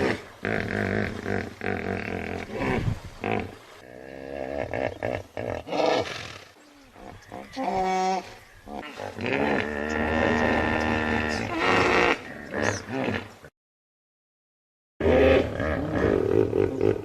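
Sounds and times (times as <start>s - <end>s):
hippopotamus calling: 6.8s - 13.4s.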